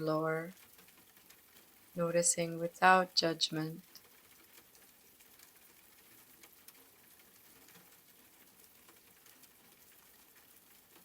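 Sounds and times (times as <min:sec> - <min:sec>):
faint rain falling: 0:00.0 - 0:11.0
raindrops ticking: 0:00.0 - 0:11.0.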